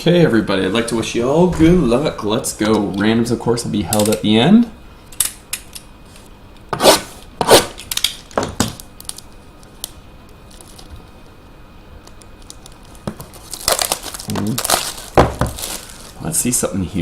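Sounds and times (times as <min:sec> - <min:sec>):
cardboard and wrapping tearing: 0:13.2 - 0:16.3.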